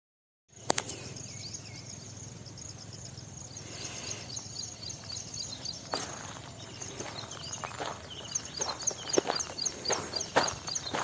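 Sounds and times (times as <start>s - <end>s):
insects chirping: 0.5s - 11.0s
small birds chirping: 0.5s - 11.0s
sharp click: 0.6s - 1.0s.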